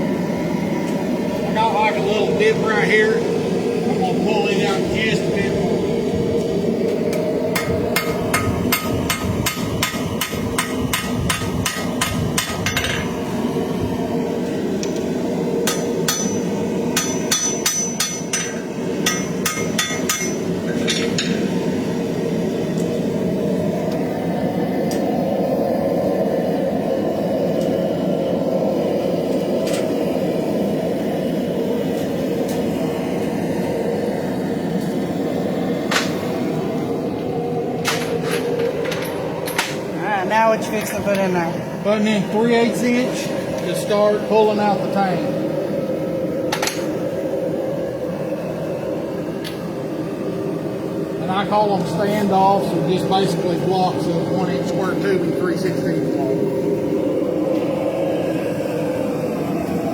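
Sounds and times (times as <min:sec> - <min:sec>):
steady roar: 0:00.0 - 0:17.1, 0:18.4 - 0:59.9
hammer striking hot steel: 0:06.8 - 0:13.2, 0:14.8 - 0:21.6, 0:35.9 - 0:36.4, 0:37.8 - 0:39.9, 0:46.5 - 0:47.0.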